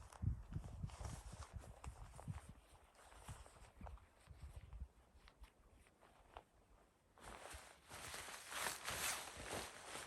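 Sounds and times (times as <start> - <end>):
footsteps in snow: 7.2 - 10.0.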